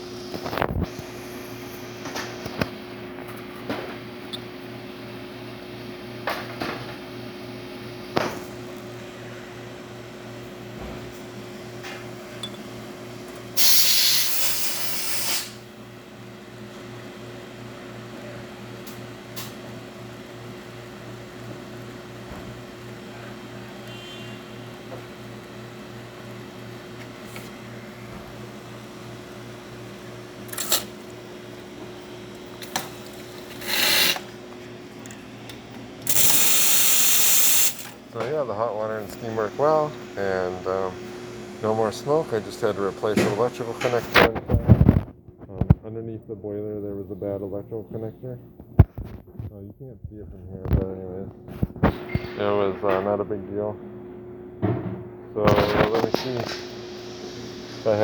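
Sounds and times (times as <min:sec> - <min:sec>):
espresso machine pump humming: 0:07.0 - 0:44.3, 0:55.5 - 0:58.0
steam hissing from wand: 0:13.6 - 0:15.6, 0:36.1 - 0:37.9.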